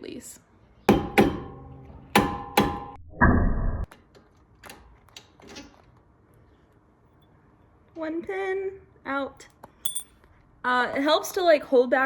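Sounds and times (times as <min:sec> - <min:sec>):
metal-on-metal strikes: 0:00.9 - 0:03.0.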